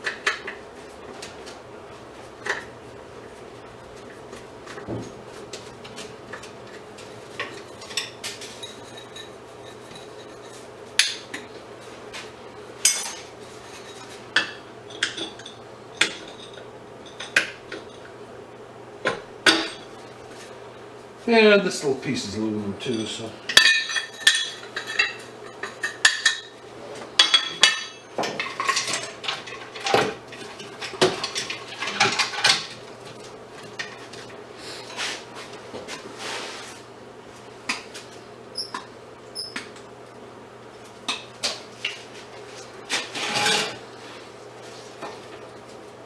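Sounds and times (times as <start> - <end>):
metal scrap clinking and clanking: 27.2 - 32.8, 43.0 - 43.8.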